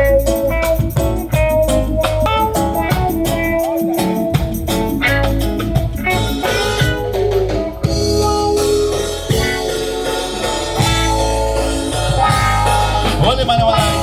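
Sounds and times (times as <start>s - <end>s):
live reggae band playing: 0.0s - 14.0s.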